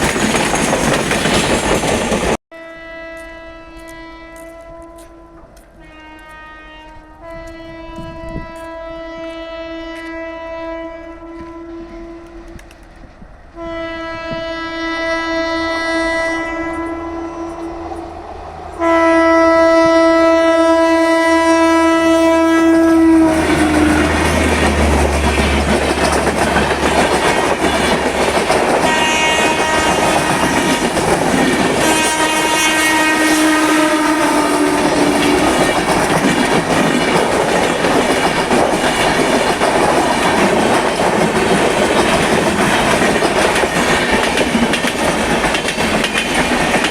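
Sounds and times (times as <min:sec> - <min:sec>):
train wheels clattering on rails: 0:00.0 - 0:02.4, 0:23.2 - 0:46.9
train horn blasts: 0:02.5 - 0:12.7, 0:13.6 - 0:36.8.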